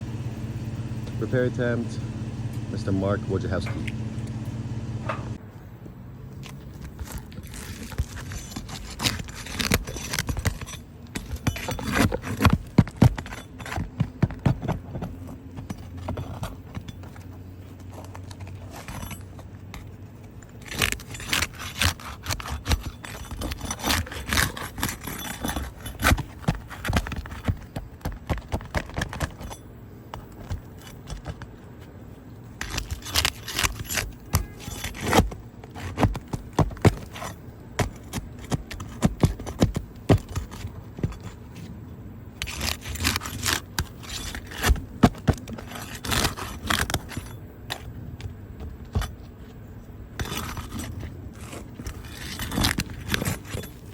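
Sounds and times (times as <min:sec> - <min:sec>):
faint low hum: 0:00.0 - 0:07.6
metal parts clinking and scraping: 0:06.5 - 0:27.7, 0:28.7 - 0:41.7, 0:42.3 - 0:53.9.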